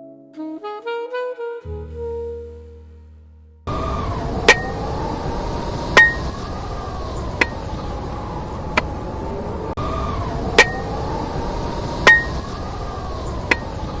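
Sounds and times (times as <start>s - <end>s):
rising and falling whistling tones: 3.7s - 14.0s
steady hiss: 3.8s - 9.2s, 10.4s - 14.0s.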